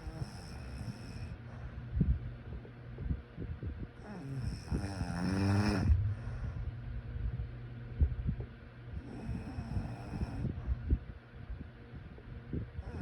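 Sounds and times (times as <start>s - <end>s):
person snoring with rattle: 0.0s - 1.4s, 4.0s - 6.2s, 9.0s - 10.6s
short low knocks: 5.8s - 7.4s.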